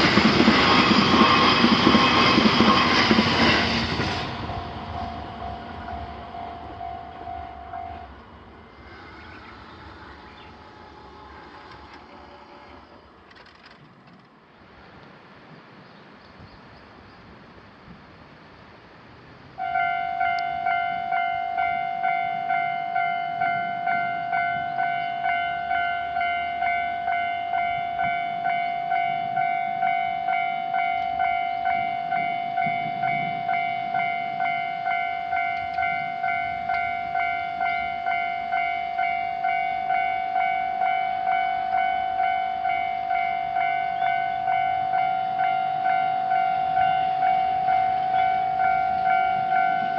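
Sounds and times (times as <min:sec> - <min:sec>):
level-crossing alarm bell dinging: 0:04.3 - 0:08.2, 0:19.6 - 0:49.9.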